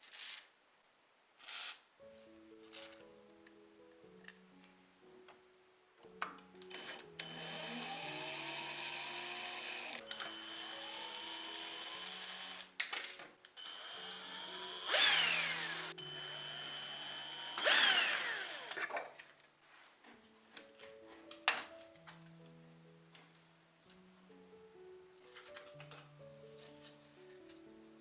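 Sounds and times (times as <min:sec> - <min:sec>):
quiet background music: 0:00.0 - 0:28.0
rotary power tool whirring: 0:06.7 - 0:12.7, 0:13.6 - 0:19.2.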